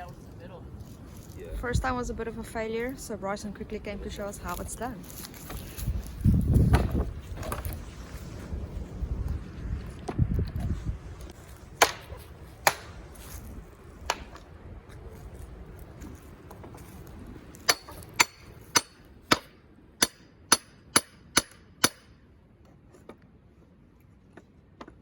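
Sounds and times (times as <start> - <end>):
hammer striking wooden pallet: 11.8 - 13.0, 17.7 - 22.1.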